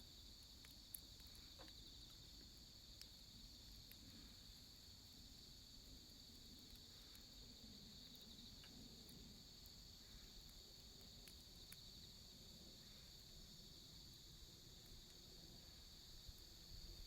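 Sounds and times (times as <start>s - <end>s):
crickets chirping: 0.0s - 17.0s
faint clicks: 8.1s - 11.9s.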